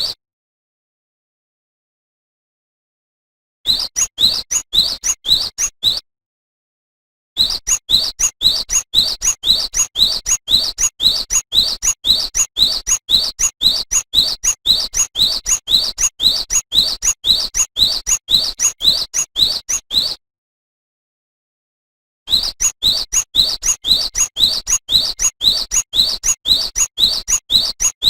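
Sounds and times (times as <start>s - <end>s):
bird singing rising whistle: 3.7s - 6.0s, 7.4s - 20.2s, 22.3s - 28.0s.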